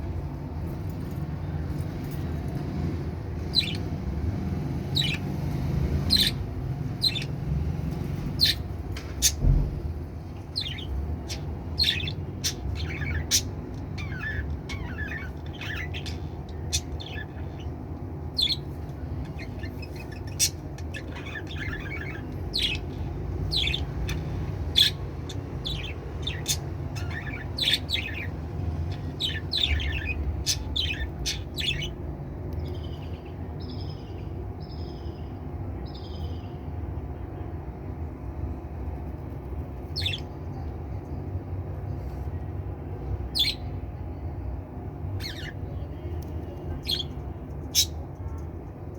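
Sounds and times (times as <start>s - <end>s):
low background hum: 0.0s - 48.9s
budgerigars chirping: 3.4s - 3.9s, 4.9s - 7.4s, 8.3s - 9.6s, 10.5s - 17.8s, 18.4s - 32.0s, 43.3s - 43.7s, 46.8s - 48.0s.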